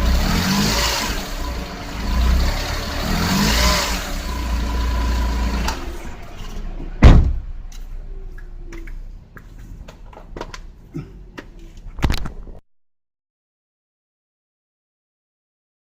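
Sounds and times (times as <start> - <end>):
car engine running: 0.0 - 7.8
heavy thump: 7.0 - 7.6.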